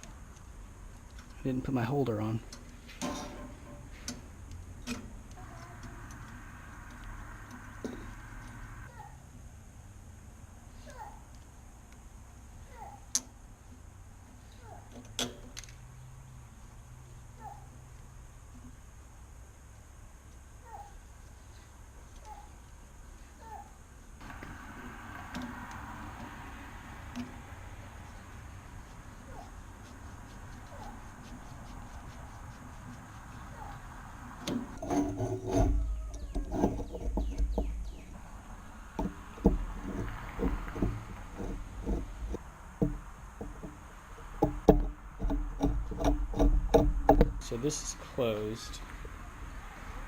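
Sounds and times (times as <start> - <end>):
sharp clicks and knocks: 0.0 - 8.6, 29.4 - 47.7
bird chirping: 35.8 - 38.5.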